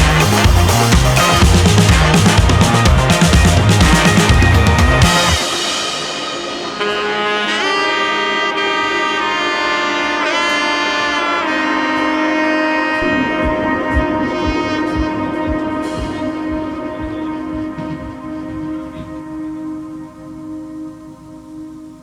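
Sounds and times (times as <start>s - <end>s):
melodic lead line: 0.0s - 10.5s, 12.9s - 20.3s
steady chords: 0.0s - 22.0s
soft low beat: 13.0s - 20.0s.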